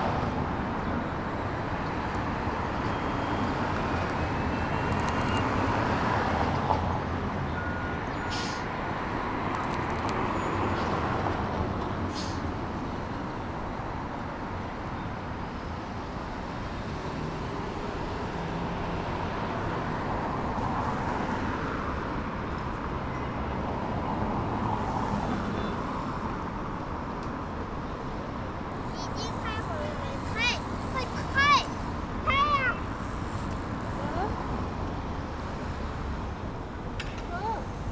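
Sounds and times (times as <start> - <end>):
passing vehicles: 0.0 - 37.9.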